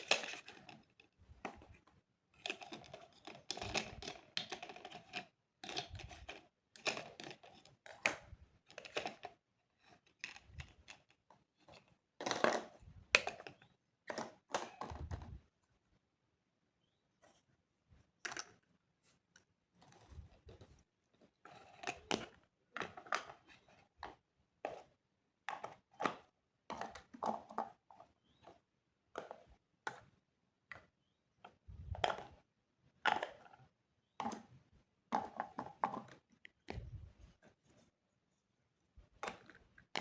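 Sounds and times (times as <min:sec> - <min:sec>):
toy pieces knocking and scraping: 0:00.0 - 0:01.7, 0:02.4 - 0:15.1.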